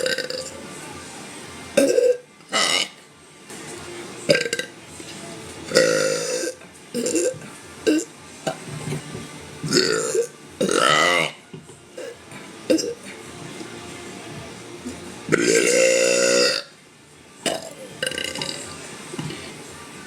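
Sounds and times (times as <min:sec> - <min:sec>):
woman burping loudly: 0:00.0 - 0:00.5, 0:01.8 - 0:03.0, 0:04.3 - 0:04.8, 0:05.7 - 0:08.6, 0:09.6 - 0:11.4, 0:12.0 - 0:13.0, 0:15.3 - 0:16.7, 0:17.4 - 0:18.7.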